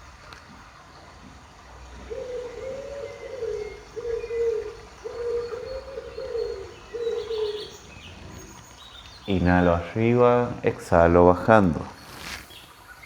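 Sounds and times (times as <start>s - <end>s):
dove cooing: 1.4s - 10.6s.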